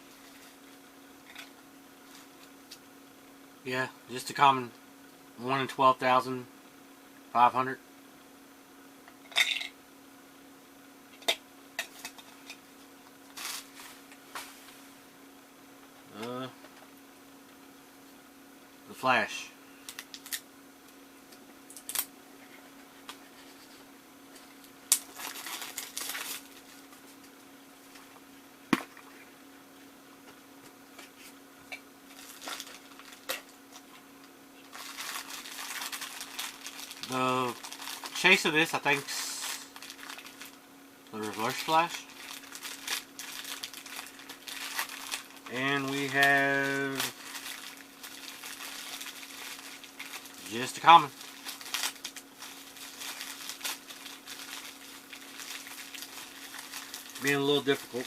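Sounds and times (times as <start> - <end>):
faint steady hum: 0.0 - 58.0
plastic wrap crinkling: 13.3 - 14.1, 24.4 - 27.3, 32.1 - 33.9, 34.6 - 58.0
packaging rustle: 24.9 - 27.0, 32.1 - 33.9, 34.7 - 38.3, 38.9 - 40.6, 41.2 - 58.0.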